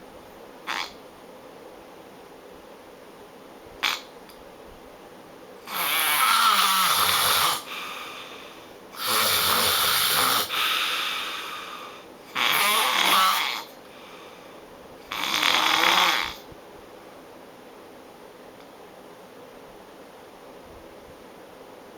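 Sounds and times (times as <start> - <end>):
person snoring loudly: 5.7 - 8.2, 9.0 - 13.7, 15.1 - 16.4.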